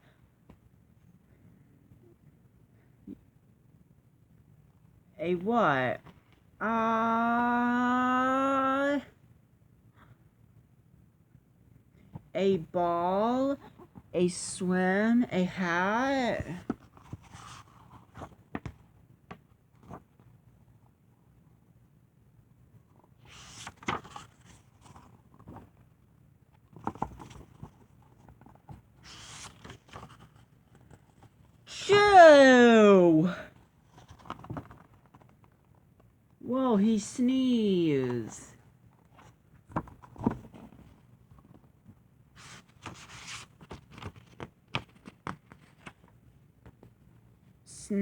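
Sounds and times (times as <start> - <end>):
paper rustling: 16.5 - 18.8, 23.0 - 26.0, 26.6 - 31.7, 33.6 - 36.0, 39.0 - 47.0
soft knocks of book handling: 16.6 - 20.6, 38.9 - 47.1.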